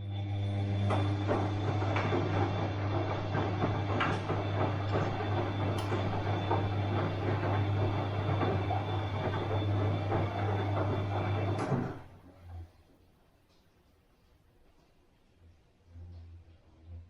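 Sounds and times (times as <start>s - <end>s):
washing machine motor hum: 0.0s - 13.1s.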